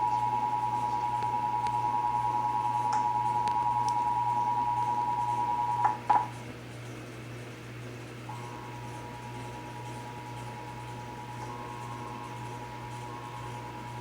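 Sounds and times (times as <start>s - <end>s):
two-tone alert alarm: 0.0s - 6.2s.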